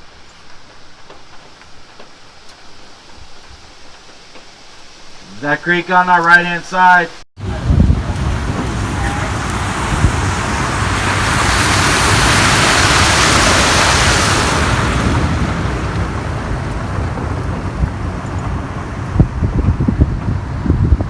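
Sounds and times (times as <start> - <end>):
rushing creek water: 7.4 - 21.0
tram rumbling: 7.4 - 21.0.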